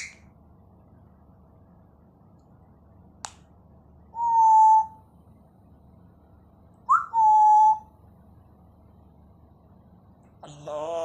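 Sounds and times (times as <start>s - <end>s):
parrot whistling: 0.0s - 0.2s, 4.2s - 5.0s, 6.9s - 7.9s
parrot rising chirp: 4.2s - 5.0s, 6.9s - 7.9s.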